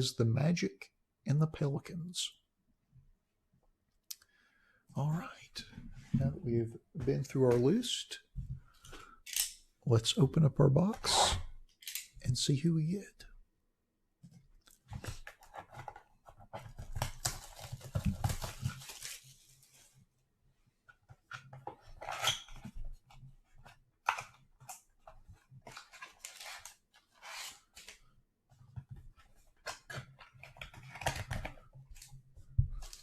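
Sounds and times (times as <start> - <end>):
packaging rustling and scraping: 14.9 - 20.0, 21.4 - 28.0
plastic wrap tearing and crinkling: 17.0 - 19.7.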